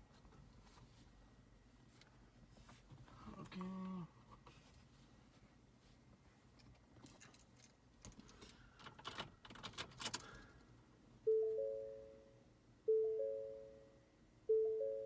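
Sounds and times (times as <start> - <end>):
keys jangling and clicking: 7.0 - 10.3
dashboard warning chime: 11.3 - 13.9, 14.5 - 15.0.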